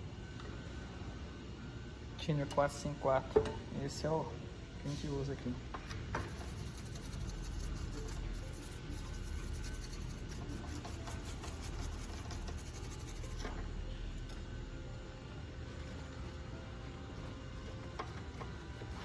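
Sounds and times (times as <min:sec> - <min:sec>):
scratchy scrubbing of circuit board: 0:06.2 - 0:13.4.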